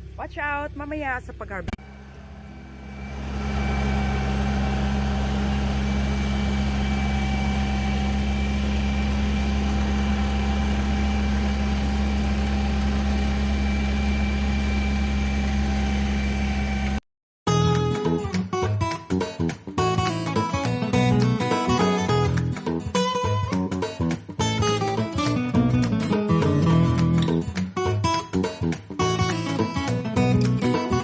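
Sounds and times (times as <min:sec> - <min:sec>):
harvester engine humming: 0:00.0 - 0:17.0.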